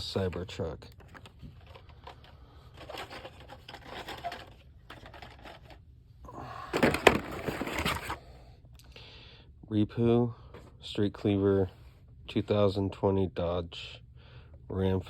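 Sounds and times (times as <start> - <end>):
blister packs and card rustling: 0.9 - 5.8, 6.4 - 8.2.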